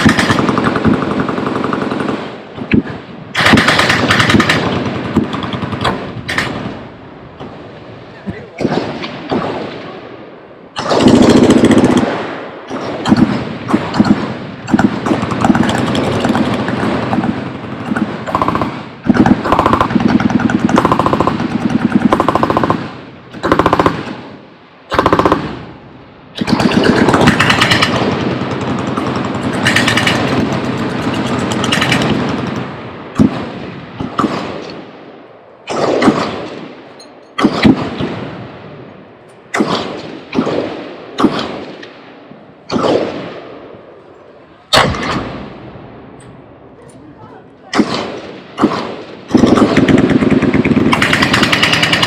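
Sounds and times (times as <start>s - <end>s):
machine guns firing: 0.0s - 6.8s, 10.8s - 24.3s, 24.9s - 25.7s, 26.4s - 34.8s, 35.7s - 38.4s, 39.5s - 42.0s, 42.7s - 43.5s, 44.7s - 45.6s, 47.7s - 52.0s
loud gunshot bangs with echo: 35.7s - 38.5s, 39.5s - 42.1s, 42.7s - 43.6s, 44.7s - 45.6s, 47.7s - 52.0s.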